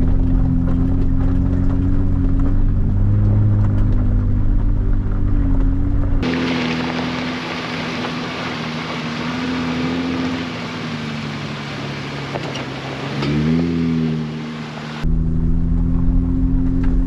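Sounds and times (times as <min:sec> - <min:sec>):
tyre and road noise: 0:00.0 - 0:17.0
vehicle engine running: 0:00.0 - 0:17.0.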